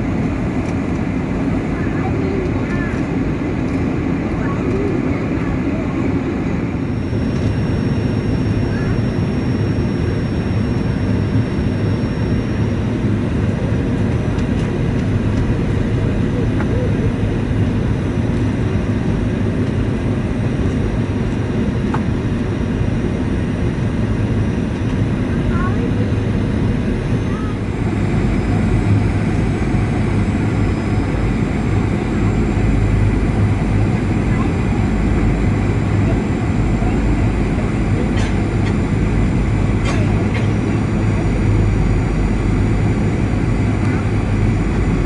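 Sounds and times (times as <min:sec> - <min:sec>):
airflow on flight deck: 0:00.0 - 0:45.0
airliner engine roar: 0:00.0 - 0:45.0
constant low hum: 0:00.0 - 0:45.0
faint high whine: 0:04.4 - 0:13.8, 0:19.6 - 0:45.0.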